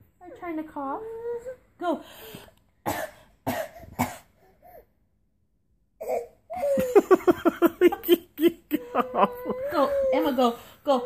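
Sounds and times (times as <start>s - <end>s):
person coughing: 2.9s - 4.3s.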